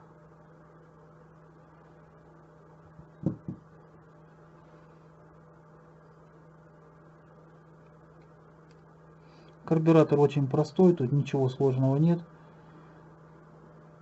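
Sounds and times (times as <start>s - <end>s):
faint low hum: 0.0s - 14.0s
short knocks: 3.2s - 3.6s.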